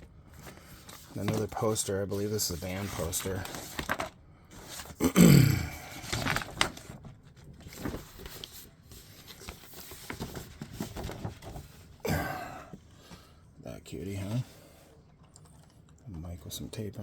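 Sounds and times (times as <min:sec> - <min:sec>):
paper rustling and crinkling: 0:00.2 - 0:05.0, 0:05.7 - 0:12.0.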